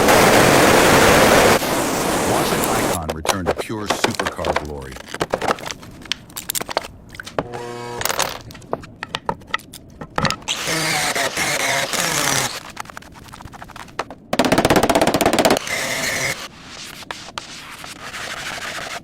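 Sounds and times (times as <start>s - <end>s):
clicks and knocks: 3.0s - 10.5s
power tool whirring: 7.4s - 8.2s, 10.5s - 12.6s.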